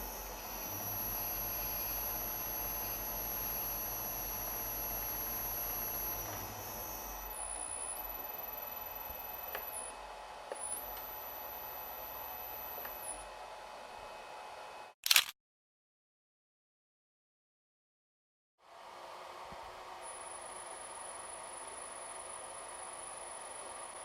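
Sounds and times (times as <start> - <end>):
high-pitched electrical whine: 0.0 - 10.0.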